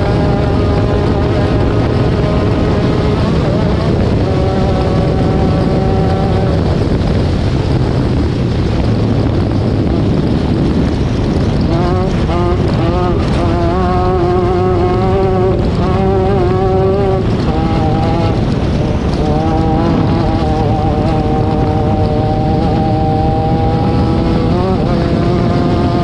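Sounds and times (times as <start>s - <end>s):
high wavering engine note: 0.0s - 7.8s, 9.4s - 26.0s
off-road vehicle roaring: 0.0s - 26.0s.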